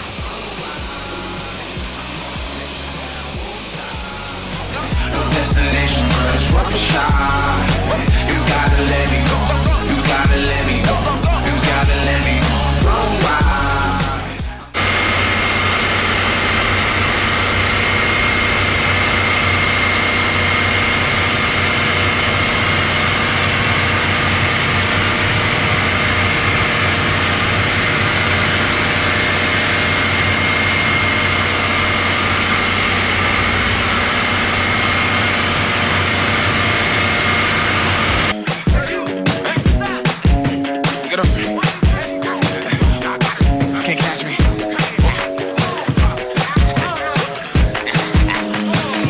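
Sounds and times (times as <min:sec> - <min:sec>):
machine hissing: 0:00.0 - 0:05.2, 0:14.8 - 0:38.3
high machine whine: 0:00.0 - 0:06.3, 0:14.7 - 0:38.4
low machine hum: 0:14.8 - 0:38.3.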